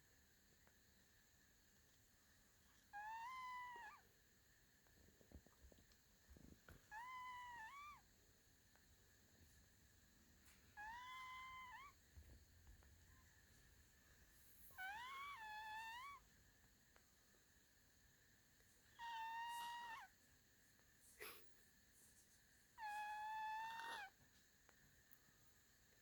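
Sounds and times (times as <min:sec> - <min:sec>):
cat snoring with squeaky whistle: 0:14.5 - 0:16.2.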